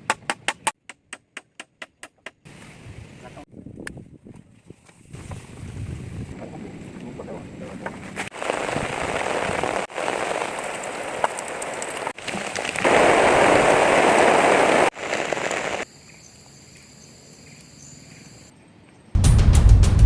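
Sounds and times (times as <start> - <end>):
heavy rain pouring: 8.3 - 15.8.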